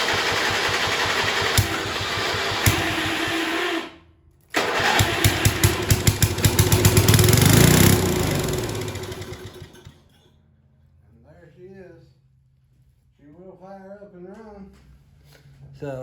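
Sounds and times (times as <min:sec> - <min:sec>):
small gasoline engine running roughly: 0:00.0 - 0:03.9, 0:04.6 - 0:10.0.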